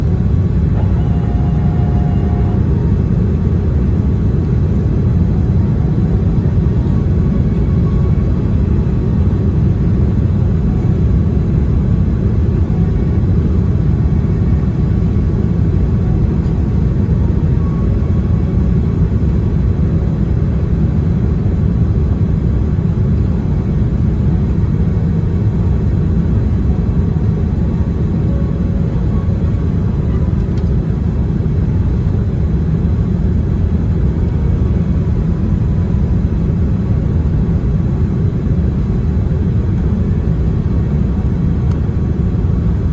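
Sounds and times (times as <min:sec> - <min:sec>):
airliner low rumble: 0:00.0 - 0:42.9.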